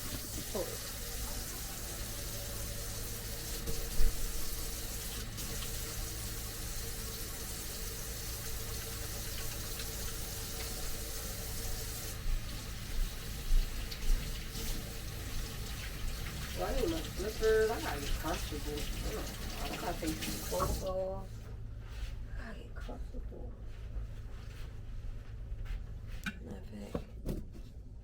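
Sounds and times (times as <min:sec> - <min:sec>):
tap water running into sink: 0:00.0 - 0:21.0.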